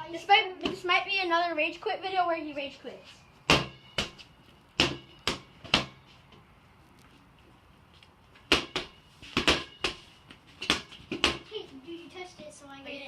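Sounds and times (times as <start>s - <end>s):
ball smacking against wall and floor: 3.5s - 4.2s, 4.8s - 6.0s, 8.4s - 11.5s.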